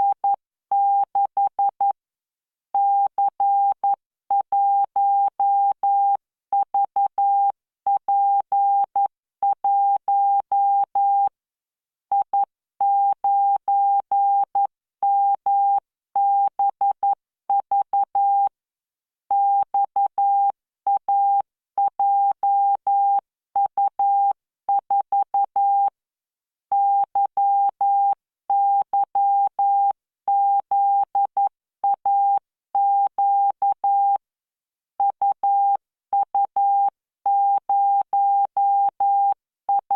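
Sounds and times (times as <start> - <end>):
morse code beeps: 36.4 - 39.9.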